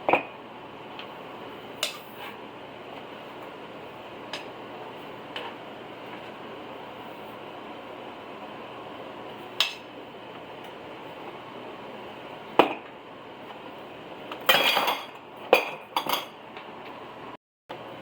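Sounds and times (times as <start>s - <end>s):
steady background hum: 0.0s - 18.0s
utensils and dishes clinking: 14.4s - 16.4s.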